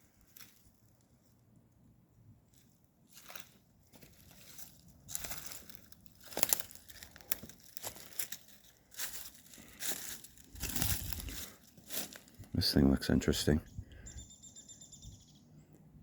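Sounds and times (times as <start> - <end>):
rustling and crunching: 0.0 - 1.4, 2.5 - 12.6.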